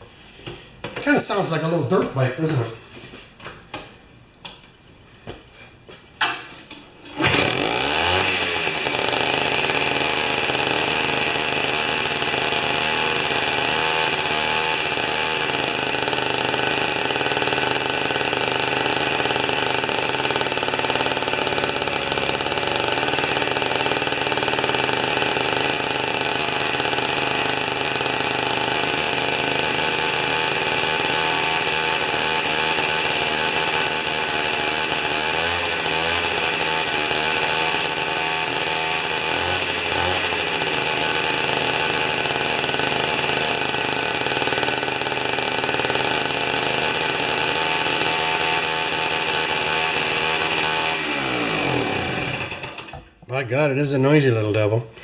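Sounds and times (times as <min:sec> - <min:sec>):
two-stroke engine running: 0:07.2 - 0:53.1.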